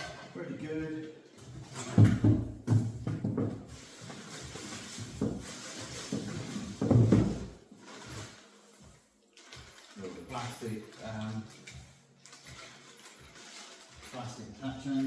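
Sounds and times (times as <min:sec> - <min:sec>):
thumps and knocks of handled parts: 0:01.4 - 0:08.2
packaging rustling: 0:03.6 - 0:15.0.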